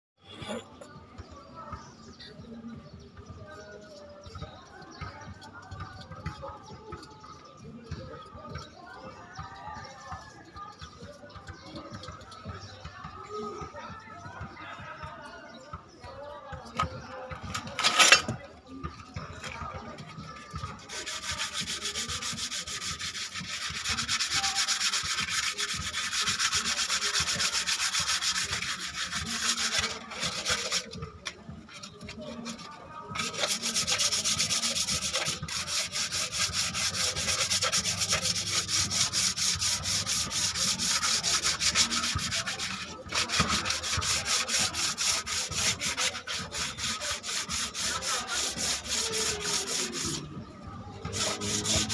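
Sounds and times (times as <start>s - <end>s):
hand sanding strokes: 20.3s - 50.3s, 51.0s - 51.9s.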